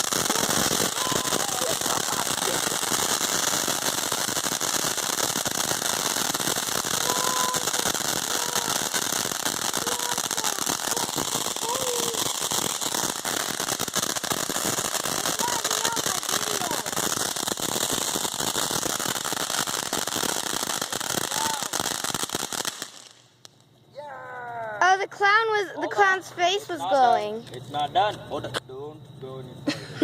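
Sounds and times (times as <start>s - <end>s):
fireworks fountain crackling: 0.0s - 23.7s.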